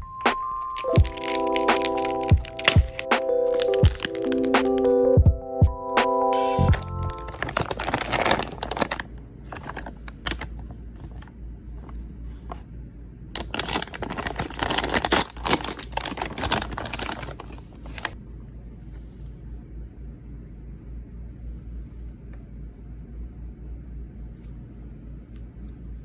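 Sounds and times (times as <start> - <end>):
low steady hum: 0.0 - 26.0
packaging crinkling: 0.7 - 4.9, 6.7 - 11.3, 13.4 - 18.2.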